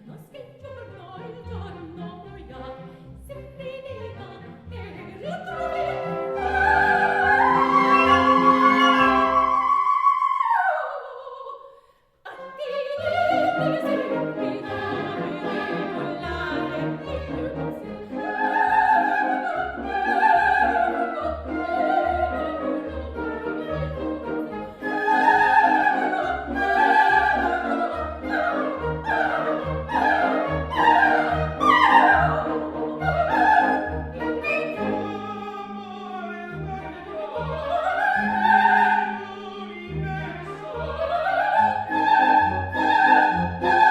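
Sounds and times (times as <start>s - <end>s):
opera-style classical music: 0.0s - 43.9s.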